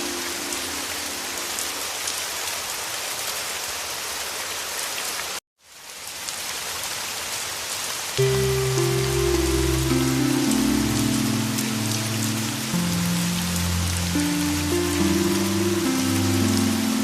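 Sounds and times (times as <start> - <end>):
heavy rain falling: 0.0 - 17.0
music with low held notes: 8.2 - 17.0.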